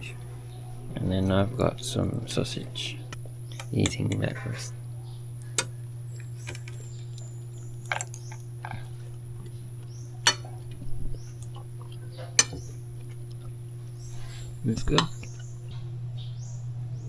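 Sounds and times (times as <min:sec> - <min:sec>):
steady low hum: 0:00.0 - 0:17.0
cutlery clinking against plate: 0:10.0 - 0:11.5, 0:12.1 - 0:13.2, 0:14.2 - 0:15.5.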